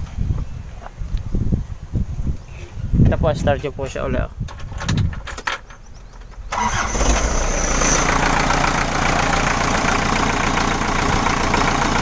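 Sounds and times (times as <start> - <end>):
diesel engine starting and idling: 6.4 - 12.0.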